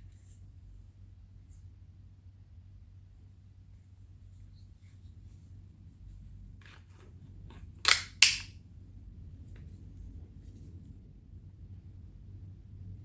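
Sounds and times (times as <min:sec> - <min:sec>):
pistol action metallic clacks: 0:07.8 - 0:08.5
faint pistol clicks: 0:07.9 - 0:08.5.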